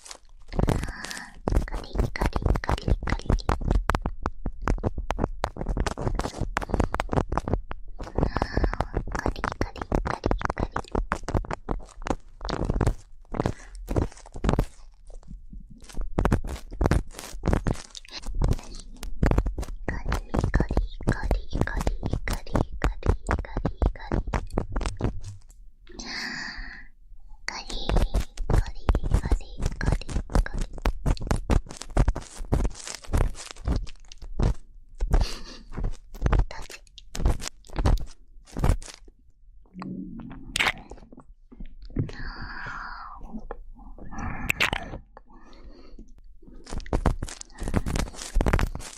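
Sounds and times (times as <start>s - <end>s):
soft low murmur: 0.0s - 4.8s
ear pick scratching microphone: 0.0s - 26.1s, 27.5s - 39.1s, 40.2s - 42.6s, 46.5s - 48.9s
ear pick scraping: 23.7s - 25.6s.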